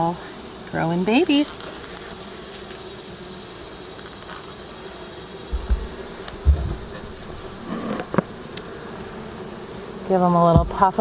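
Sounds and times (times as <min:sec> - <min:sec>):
honey bees buzzing: 0:00.0 - 0:11.0
short low thumps: 0:05.5 - 0:08.6.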